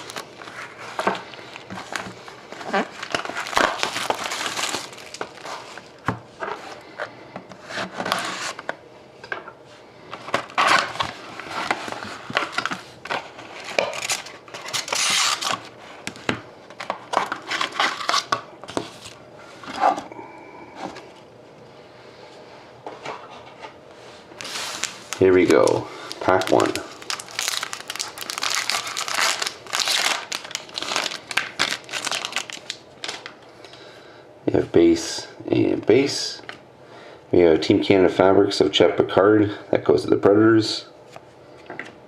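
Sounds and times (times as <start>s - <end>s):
plastic wrapping crinkling and tearing: 0.0s - 6.0s, 10.3s - 15.7s, 16.8s - 19.2s, 24.4s - 33.4s.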